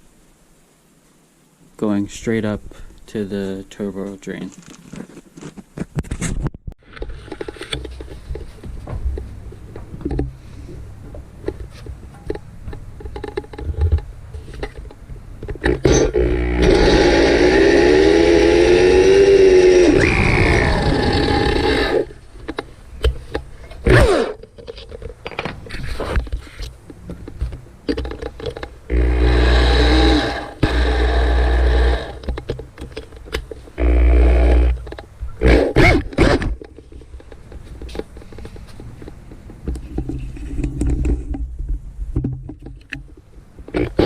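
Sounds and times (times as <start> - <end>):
metal parts knocking and scraping: 4.5 - 8.9
handheld power tool running: 15.7 - 22.1, 23.9 - 24.4, 28.9 - 32.3, 33.8 - 34.8, 35.4 - 36.4.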